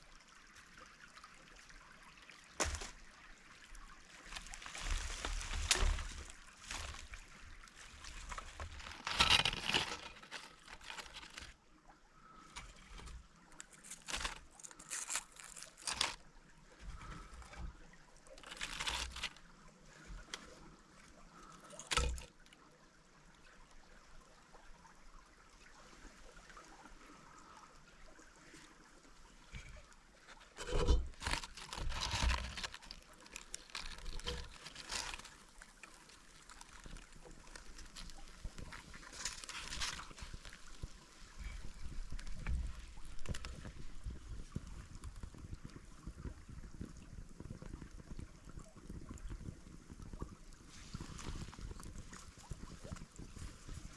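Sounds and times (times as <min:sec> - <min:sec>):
stream water trickling: 0:00.0 - 0:53.9
bumps and rustles: 0:08.2 - 0:11.5, 0:29.5 - 0:35.4.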